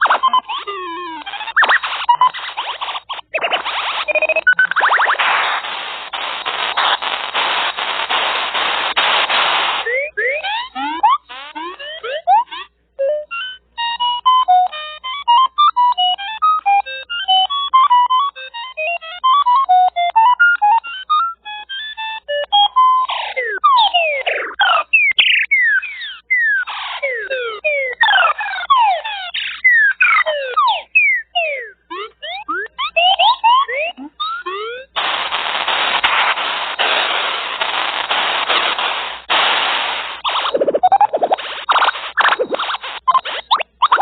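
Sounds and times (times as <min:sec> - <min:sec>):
short electronic beeps: 0:00.0 - 0:06.7, 0:09.5 - 0:37.2, 0:40.2 - 0:44.0
falling electronic zaps: 0:00.0 - 0:12.7, 0:23.1 - 0:44.0.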